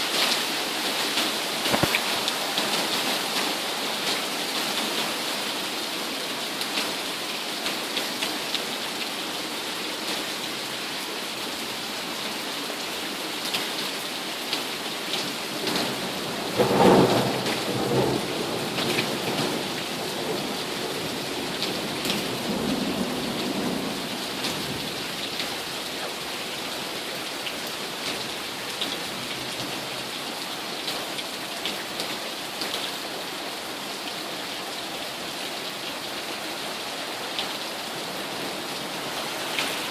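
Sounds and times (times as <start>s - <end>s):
heavy rain: 0.0s - 39.9s
thunderclap rumbling: 15.8s - 25.1s.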